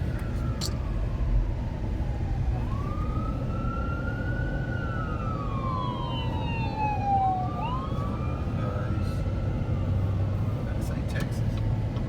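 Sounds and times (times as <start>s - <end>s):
emergency siren wailing: 0.0s - 10.4s
road rumble: 0.0s - 12.0s.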